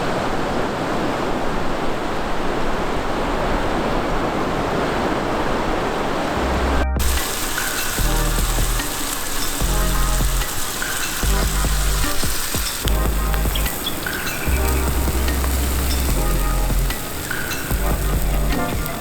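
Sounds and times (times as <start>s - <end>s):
ocean surf rushing: 0.0s - 19.0s
low deep note: 6.4s - 7.3s, 8.0s - 8.8s, 12.9s - 13.7s, 14.5s - 17.0s, 17.7s - 18.6s
food sizzling in a pan: 7.0s - 19.0s.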